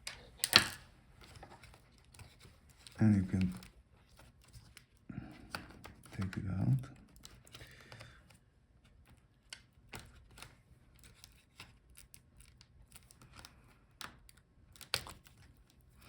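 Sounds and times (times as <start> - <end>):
small laptop parts clicking: 9.4 - 15.8.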